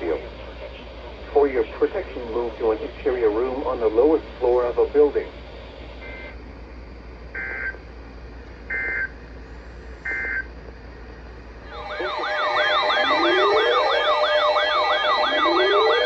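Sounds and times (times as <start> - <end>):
digital data bursts: 11.7 - 16.0
electronic siren wail: 11.7 - 16.0.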